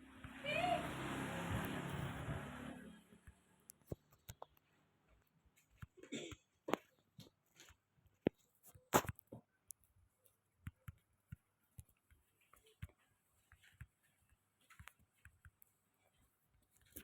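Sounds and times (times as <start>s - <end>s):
faint clicks and taps: 3.2s - 17.0s.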